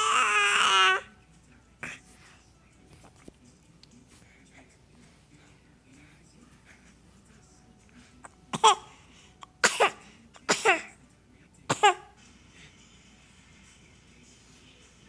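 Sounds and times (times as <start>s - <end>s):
child fake coughing: 8.5s - 8.9s, 9.6s - 10.9s, 11.7s - 12.1s.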